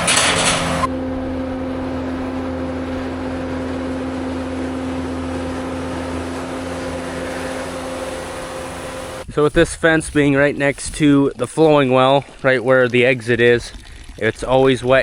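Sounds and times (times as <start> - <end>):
vehicle engine humming: 0.0 - 9.3.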